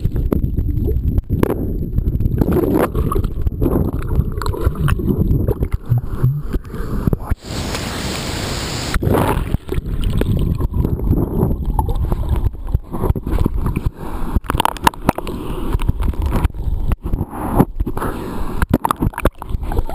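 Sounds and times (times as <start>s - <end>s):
low rumbling microphone noise: 0.0s - 19.9s
water sloshing and gurgling: 0.0s - 19.9s
steady hiss: 7.4s - 9.0s.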